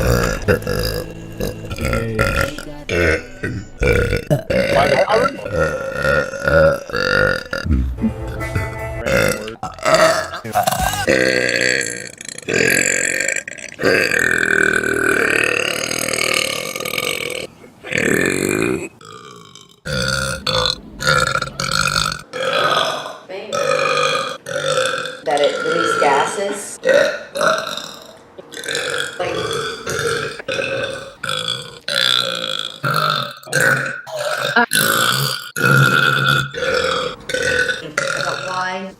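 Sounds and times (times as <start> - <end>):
girl burping: 0.0 - 8.0, 32.9 - 38.8
woman burping: 0.0 - 8.0, 9.1 - 20.2, 22.3 - 38.8.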